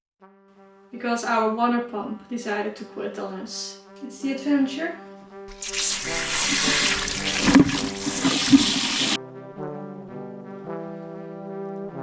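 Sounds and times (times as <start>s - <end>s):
background music: 0.2s - 12.0s
loud running water: 5.5s - 9.2s.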